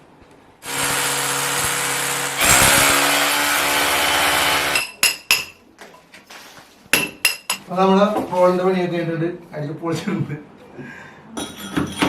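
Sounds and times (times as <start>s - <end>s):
electric drill boring into wall: 0.6s - 4.8s.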